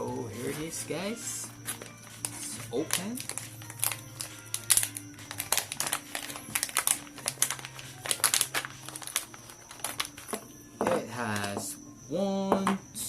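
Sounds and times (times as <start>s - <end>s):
plastic packaging crinkling: 0.4s - 10.5s.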